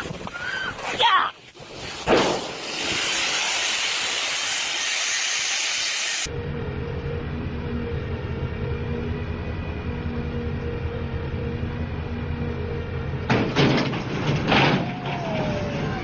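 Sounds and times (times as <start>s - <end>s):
heavy machine engine running: 3.6s - 16.0s.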